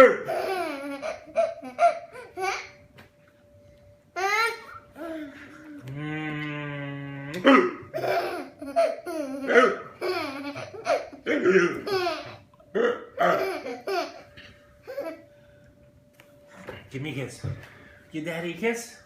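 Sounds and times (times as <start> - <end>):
baby laughing: 0.0 - 2.7, 7.9 - 12.4, 13.2 - 14.2
man hiccuping: 7.3 - 7.9, 9.4 - 10.0, 12.7 - 13.4.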